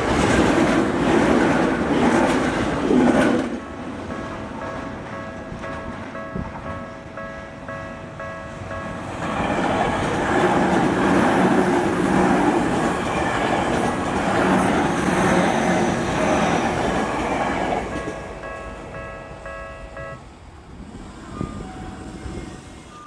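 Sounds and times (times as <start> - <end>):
train passing: 0.0 - 23.0
level crossing warning bell: 4.0 - 20.5.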